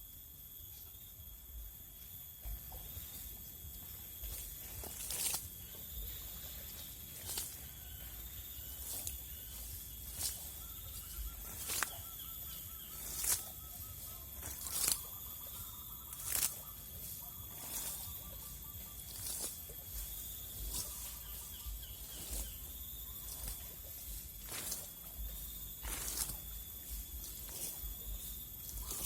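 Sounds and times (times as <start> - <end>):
faint pulsed chirping call: 0.0 - 29.0
insects droning: 0.0 - 29.0.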